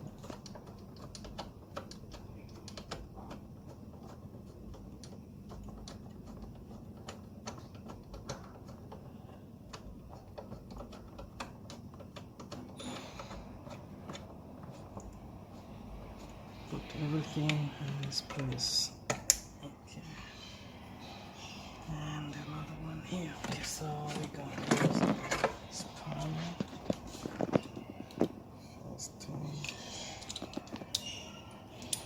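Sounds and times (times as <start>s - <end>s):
hand tools clicking and tapping: 0.0s - 19.5s, 22.2s - 28.5s
faint low hum: 0.0s - 32.0s.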